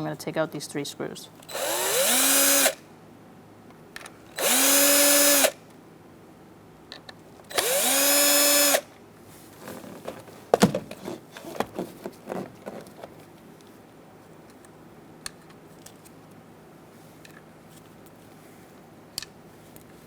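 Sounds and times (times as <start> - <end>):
cordless drill motor whine: 1.4 - 2.8, 4.3 - 5.6, 7.5 - 8.9.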